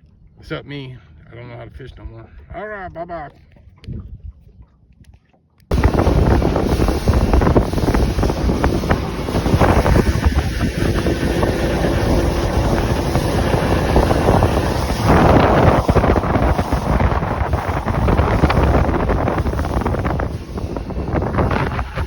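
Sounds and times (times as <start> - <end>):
hull on water: 3.2 - 22.0
wind buffeting microphone: 3.7 - 4.7, 5.7 - 22.0
boat motor: 5.7 - 22.0.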